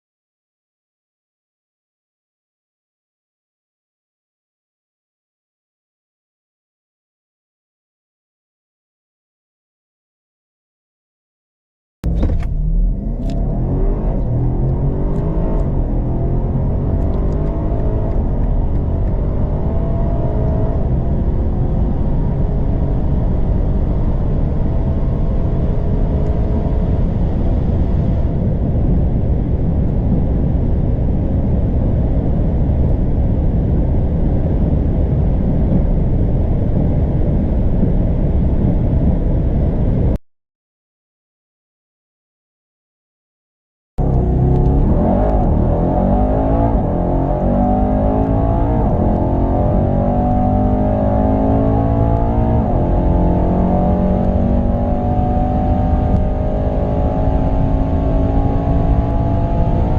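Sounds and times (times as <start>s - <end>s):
car engine accelerating: 12.0s - 40.1s, 44.0s - 59.9s
wind and tyre noise: 12.0s - 40.2s, 44.0s - 59.9s.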